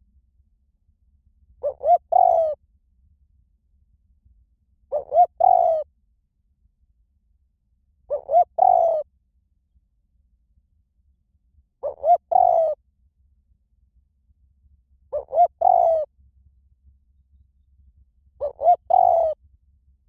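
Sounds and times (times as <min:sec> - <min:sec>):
dove cooing: 0:01.6 - 0:02.6, 0:04.9 - 0:05.8, 0:08.1 - 0:09.0, 0:11.8 - 0:12.8, 0:15.1 - 0:16.1, 0:18.4 - 0:19.4.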